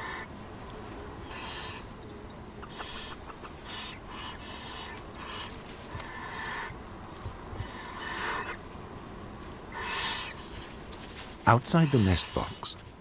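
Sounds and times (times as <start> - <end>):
owl chicks hissing: 1.3 - 1.9, 2.6 - 6.7, 7.6 - 8.6, 9.7 - 10.8.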